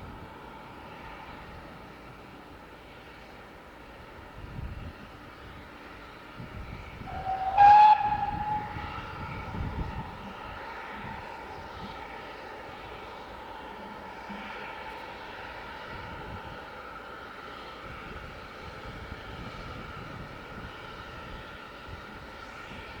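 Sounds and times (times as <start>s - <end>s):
steam locomotive whistle: 7.0s - 10.1s.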